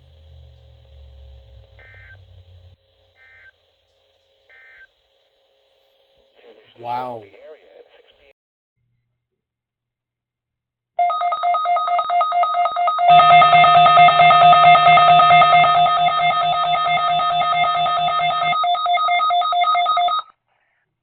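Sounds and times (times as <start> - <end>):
two-tone electronic alarm: 0.0 - 3.6, 4.5 - 4.9, 11.0 - 20.3
low buzz: 0.0 - 6.3, 13.1 - 18.6.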